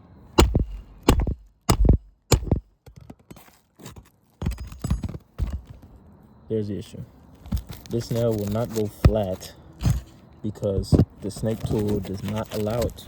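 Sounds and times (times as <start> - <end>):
hammer striking nail: 0.4 - 2.7.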